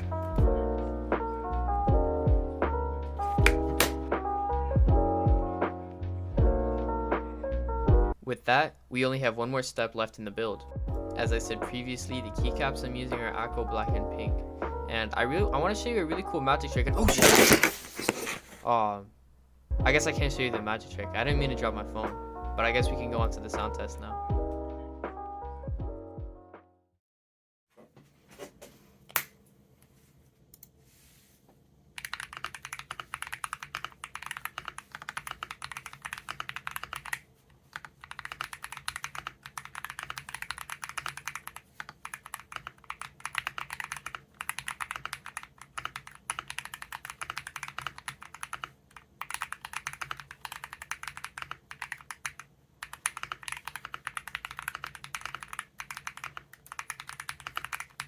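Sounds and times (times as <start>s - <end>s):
fast keyboard keystrokes: 32.0s - 58.0s.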